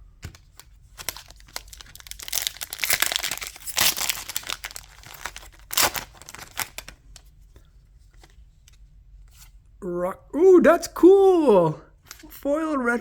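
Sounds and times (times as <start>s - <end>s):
wrapper crinkling: 0.8s - 7.2s
wrapper ripping: 0.9s - 7.0s.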